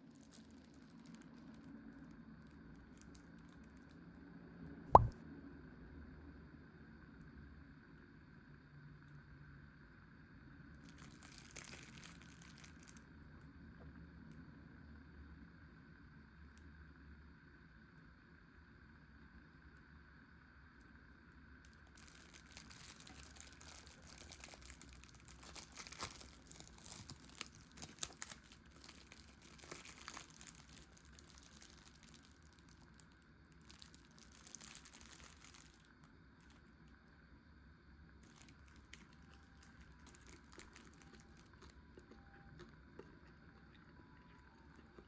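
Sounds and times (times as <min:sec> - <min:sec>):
plastic wrapper crinkling and tearing: 0:00.0 - 0:02.1, 0:02.8 - 0:03.2, 0:10.9 - 0:13.0, 0:21.7 - 0:36.6, 0:38.2 - 0:45.0.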